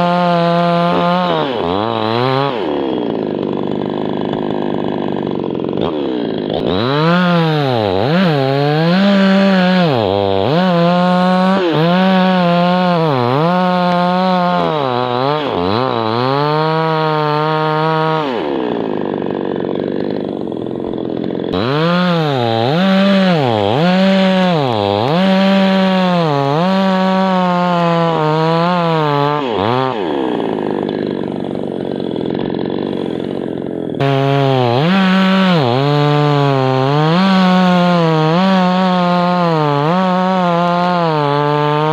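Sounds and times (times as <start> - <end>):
chainsaw cutting wood: 0.0 - 41.9.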